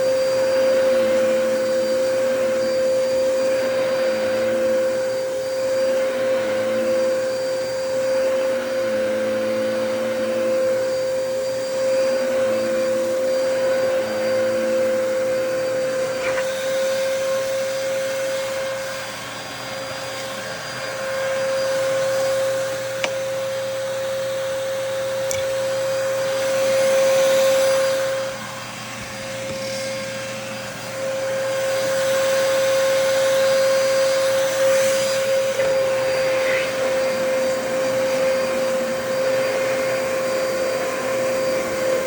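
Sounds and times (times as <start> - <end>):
vacuum cleaner running: 0.0 - 42.0
sharp click: 25.3 - 25.6.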